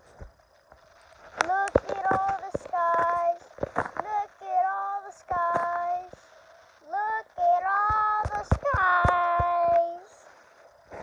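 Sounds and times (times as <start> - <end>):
child singing held notes: 1.4 - 10.3
sharp clicks: 6.9 - 9.9.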